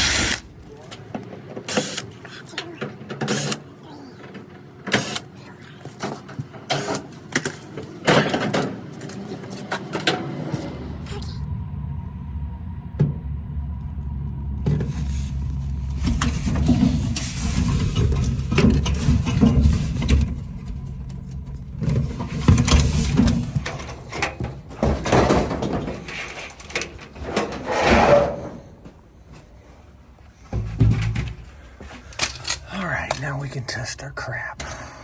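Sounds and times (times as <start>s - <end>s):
low rumble: 10.6s - 26.2s
sheet metal scraping and clanking: 14.6s - 29.4s, 30.4s - 32.6s.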